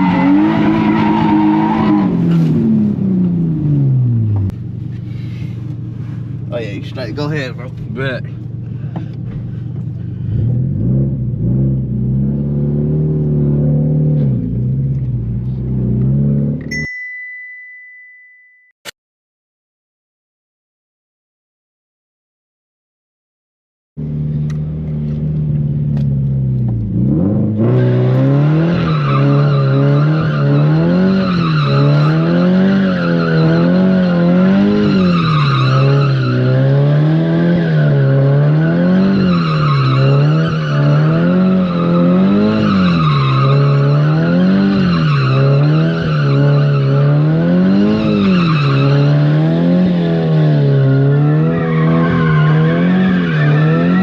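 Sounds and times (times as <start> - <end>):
car engine revving high: 10.3 - 16.7, 26.8 - 54.0.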